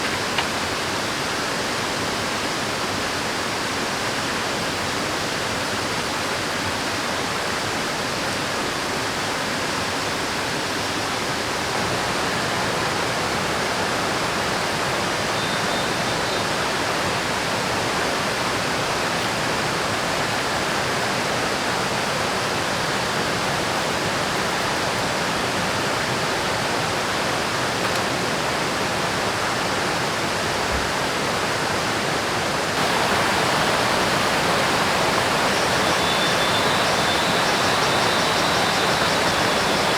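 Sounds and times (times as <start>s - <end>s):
river water rushing: 11.6s - 39.9s.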